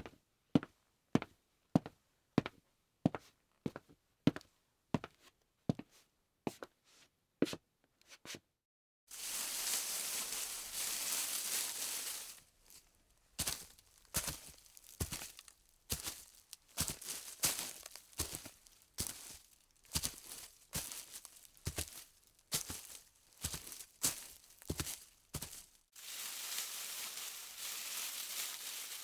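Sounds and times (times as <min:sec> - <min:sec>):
quick irregular crackles: 0:09.1 - 0:29.0.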